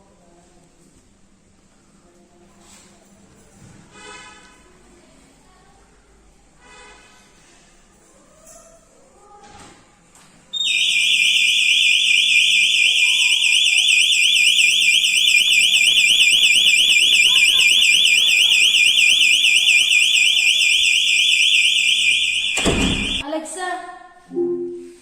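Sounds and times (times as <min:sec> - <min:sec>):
security alarm siren warbling: 0:10.6 - 0:23.2.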